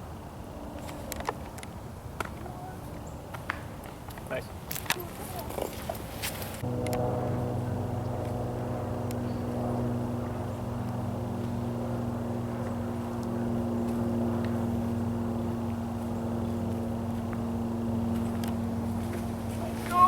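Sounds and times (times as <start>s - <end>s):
engine running steadily: 6.6s - 20.0s.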